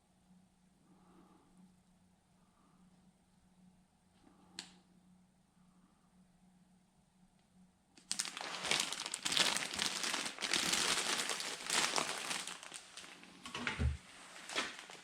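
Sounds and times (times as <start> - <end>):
packaging crinkling and rustling: 8.0 - 15.0.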